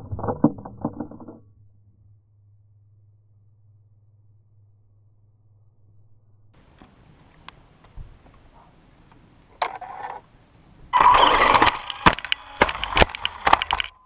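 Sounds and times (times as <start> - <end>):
radio-controlled car running: 9.5 - 10.3, 10.9 - 14.0
sharp knocks and clatter: 11.0 - 14.0.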